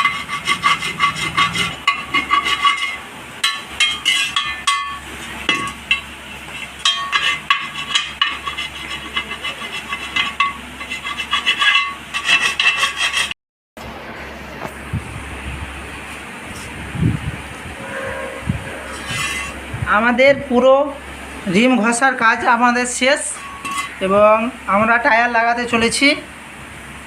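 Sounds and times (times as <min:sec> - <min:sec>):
scraping on metal wheel rim: 0:00.0 - 0:13.4, 0:17.8 - 0:19.6, 0:23.3 - 0:24.0.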